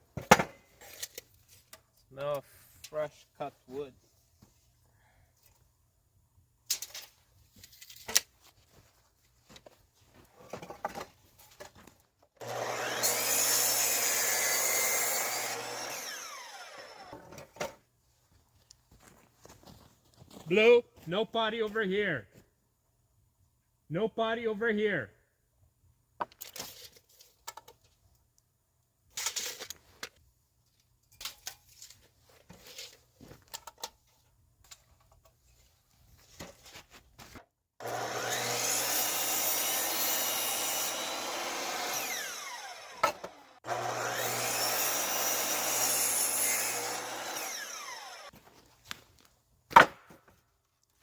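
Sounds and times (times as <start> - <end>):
electric saw cutting wood: 12.4 - 17.3, 37.8 - 48.3.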